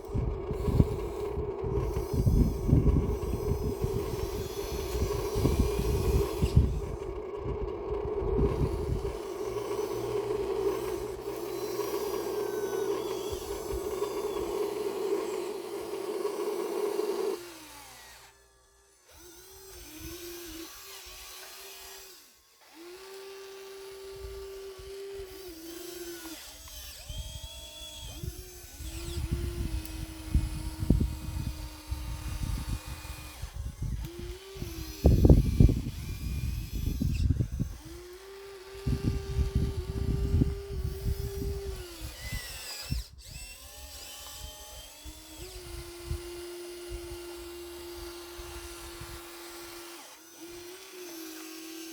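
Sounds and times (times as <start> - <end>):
low crunching and rumbling: 0.0 - 17.0, 28.1 - 46.2
small electric motors whining: 0.0 - 51.9.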